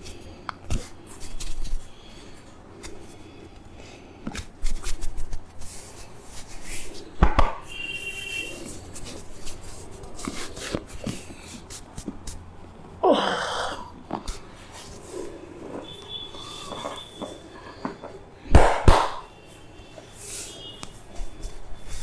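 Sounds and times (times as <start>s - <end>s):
hands slapping head: 18.5s - 19.3s.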